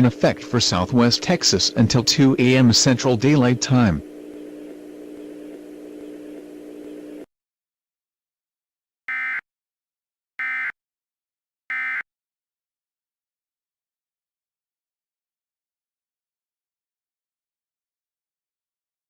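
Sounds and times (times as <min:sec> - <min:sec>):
low hum and hiss: 0:00.0 - 0:07.3.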